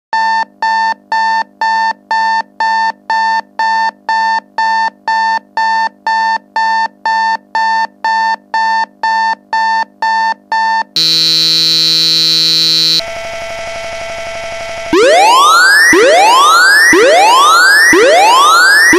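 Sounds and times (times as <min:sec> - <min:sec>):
continuous buzzer tone: 0:11.0 - 0:18.9
electronic alarm beeping: 0:11.0 - 0:18.9.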